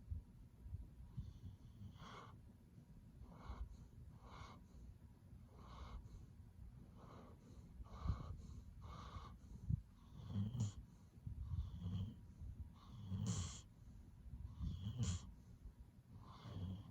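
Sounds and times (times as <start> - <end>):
dog snoring with whistling wheeze: 10.0 - 10.8, 11.5 - 12.2, 12.8 - 13.7, 14.5 - 15.3, 16.2 - 16.9.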